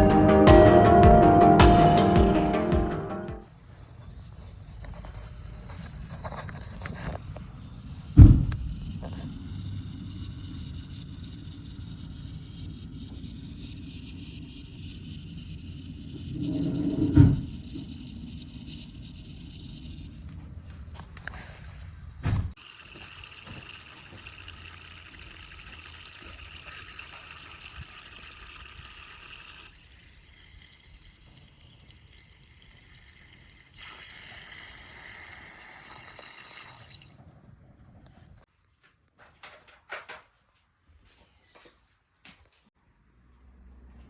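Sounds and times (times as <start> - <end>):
water running from a tap: 4.1 - 37.4.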